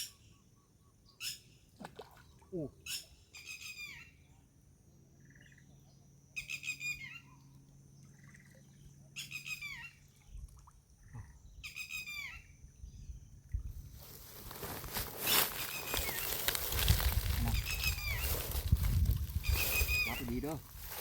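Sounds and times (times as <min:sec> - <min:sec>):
bird calling: 0:14.2 - 0:21.0.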